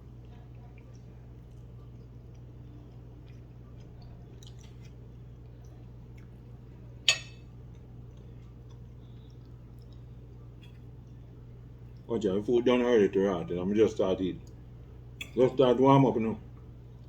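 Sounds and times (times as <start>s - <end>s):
man chewing food: 0.0s - 12.1s.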